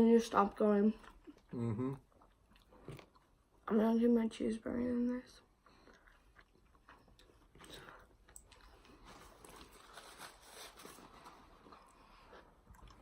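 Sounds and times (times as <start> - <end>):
person chewing: 1.0 - 3.6, 5.6 - 13.0.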